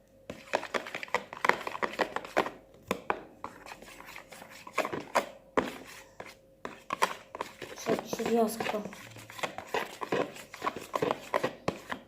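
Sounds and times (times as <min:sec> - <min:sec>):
utensil scraping a container: 0:03.4 - 0:12.0.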